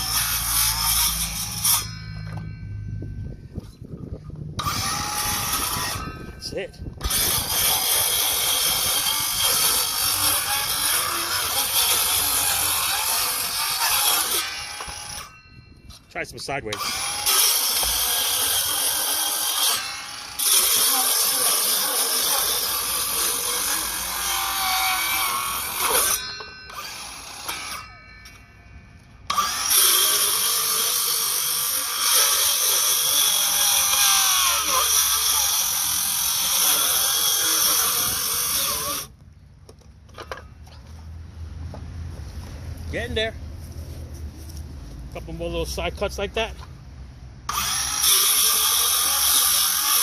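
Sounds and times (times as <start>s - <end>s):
power saw cutting wood: 0.0s - 2.6s, 4.6s - 15.4s, 16.2s - 28.6s, 29.2s - 39.2s, 47.4s - 50.0s.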